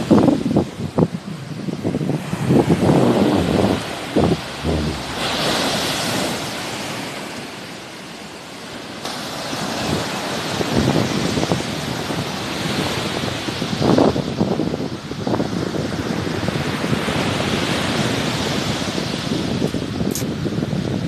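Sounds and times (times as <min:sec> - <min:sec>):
wind gusting on microphone: 0:00.0 - 0:07.1
sea waves washing ashore: 0:00.0 - 0:20.8.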